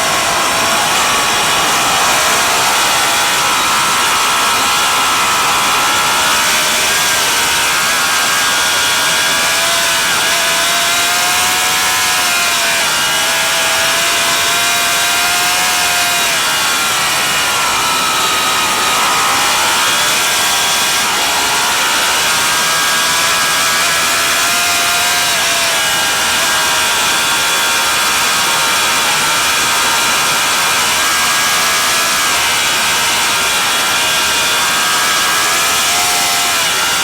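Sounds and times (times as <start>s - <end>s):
racing motorcycle engine: 0.0s - 11.8s.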